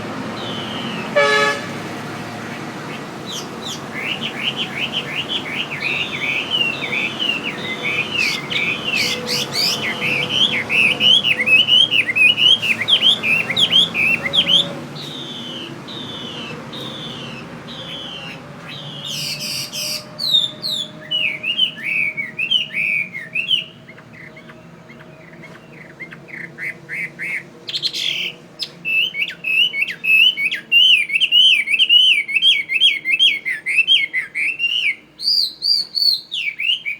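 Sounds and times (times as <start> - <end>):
bird calling in sweeping notes: 0.2 - 36.9.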